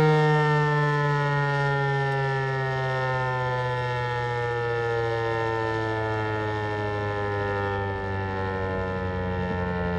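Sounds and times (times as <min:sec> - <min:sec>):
outdoor warning siren: 0:00.0 - 0:09.9.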